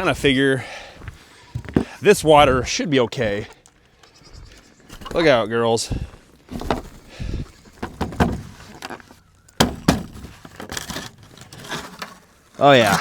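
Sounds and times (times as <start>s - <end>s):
knocks and thumps: 7.8s - 8.6s.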